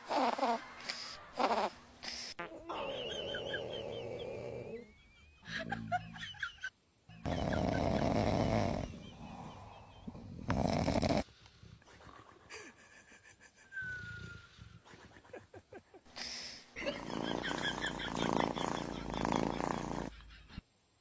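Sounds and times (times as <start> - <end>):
dog snoring: 0.0 - 1.8, 3.1 - 4.9, 7.2 - 12.4, 16.8 - 20.2.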